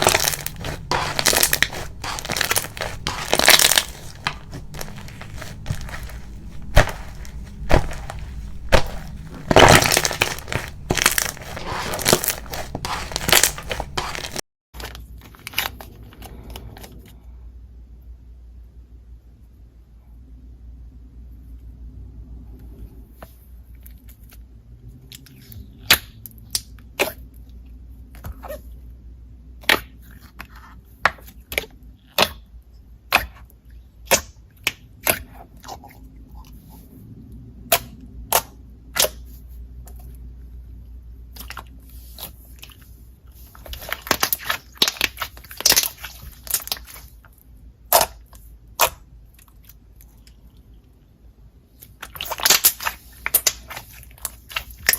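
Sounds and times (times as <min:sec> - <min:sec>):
slime squeezed popping: 0:00.0 - 0:14.4.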